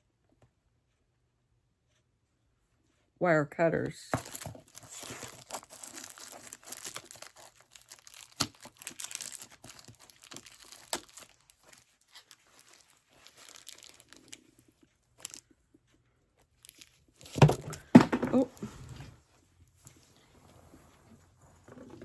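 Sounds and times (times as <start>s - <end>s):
plastic packaging crinkling and tearing: 4.1s - 15.4s, 16.6s - 17.7s.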